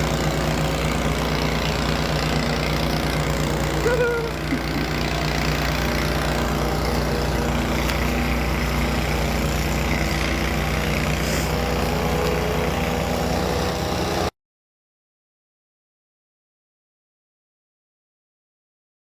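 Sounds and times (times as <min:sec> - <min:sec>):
engine idling: 0:00.0 - 0:14.3.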